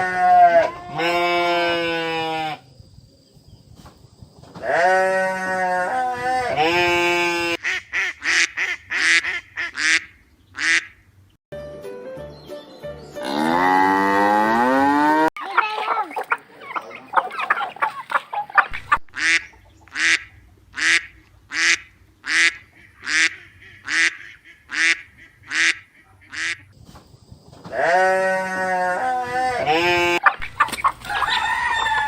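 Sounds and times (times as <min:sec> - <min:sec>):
loud harsh waterfowl calls: 0:04.6 - 0:11.0, 0:15.4 - 0:26.7, 0:27.7 - 0:32.0
waterfowl calling: 0:07.4 - 0:11.0, 0:15.4 - 0:26.7, 0:28.9 - 0:32.0.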